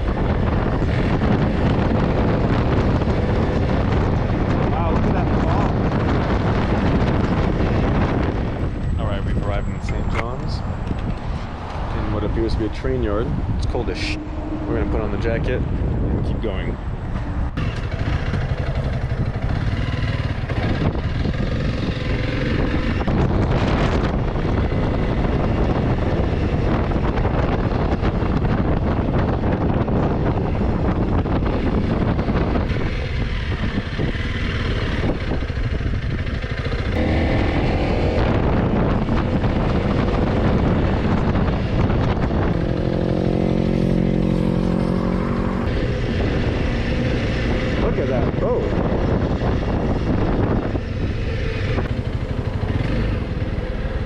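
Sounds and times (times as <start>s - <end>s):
motorcycle engine running: 0.0s - 54.0s
wind rush over microphone: 0.0s - 54.0s.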